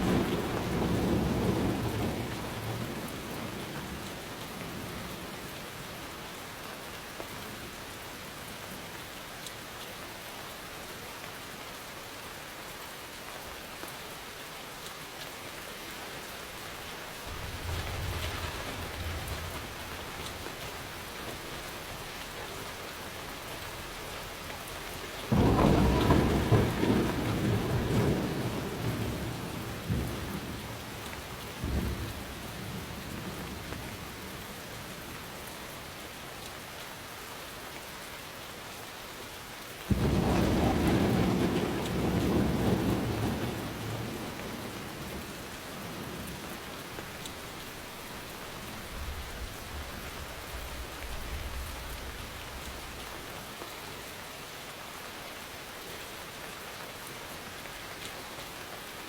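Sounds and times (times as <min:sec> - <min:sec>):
thunder rumbling: 0:00.0 - 0:04.0, 0:17.1 - 0:34.3, 0:39.9 - 0:53.0
steady rain falling: 0:00.0 - 0:59.0
loud thunderclap: 0:17.3 - 0:21.5, 0:25.3 - 0:30.8, 0:39.9 - 0:45.1.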